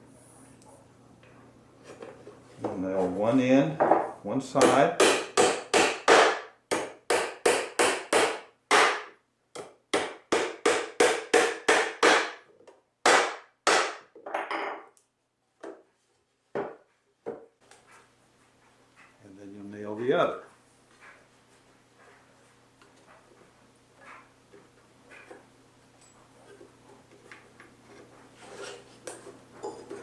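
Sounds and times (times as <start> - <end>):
hammer driving nails into wood: 4.6 - 12.4.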